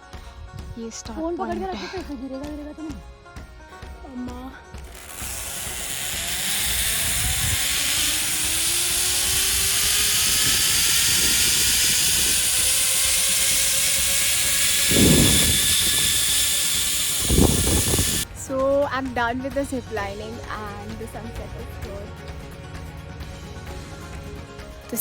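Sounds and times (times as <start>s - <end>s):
zip line pulleys whirring: 4.8s - 18.3s
low rumbles: 5.0s - 18.2s.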